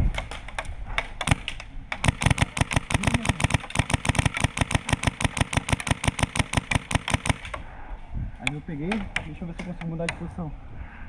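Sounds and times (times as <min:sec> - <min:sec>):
airsoft gun full-auto burst: 0:01.3 - 0:07.6.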